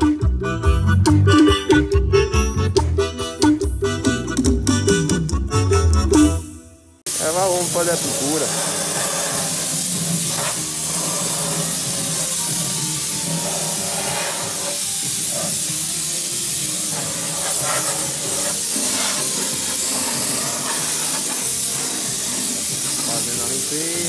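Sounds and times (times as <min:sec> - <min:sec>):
compressed air hissing: 0:07.1 - 0:24.0.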